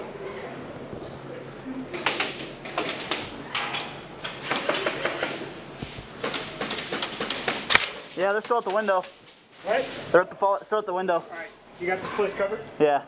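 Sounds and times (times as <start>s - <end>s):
airsoft guns firing: 4.4s - 5.5s, 6.2s - 8.9s.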